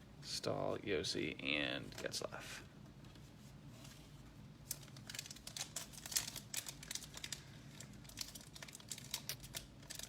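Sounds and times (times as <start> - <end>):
wrapper crinkling and crackling: 4.6 - 10.0.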